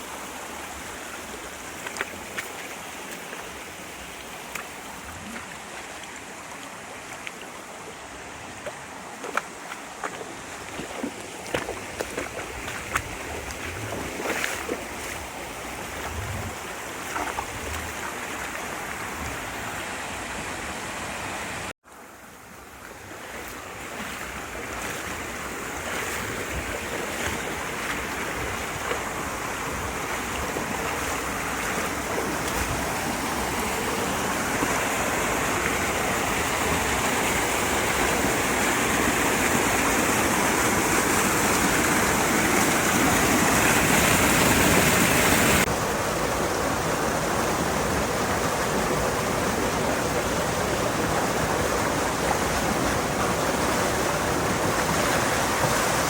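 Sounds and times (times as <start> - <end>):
stream water rushing: 0.0 - 56.0.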